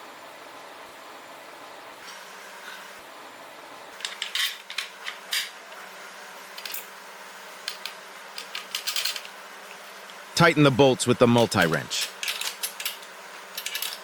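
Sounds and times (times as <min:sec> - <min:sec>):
metal bolts clinking and scraping: 0:04.0 - 0:05.6, 0:06.6 - 0:06.9, 0:07.6 - 0:09.4, 0:11.4 - 0:14.0.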